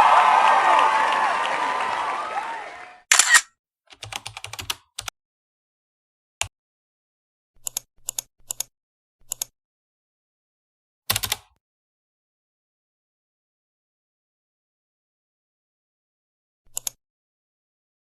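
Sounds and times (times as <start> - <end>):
crowd noise: 0.0 - 3.4
sharp clicks in clusters: 3.1 - 5.1, 11.1 - 11.6, 16.7 - 17.0.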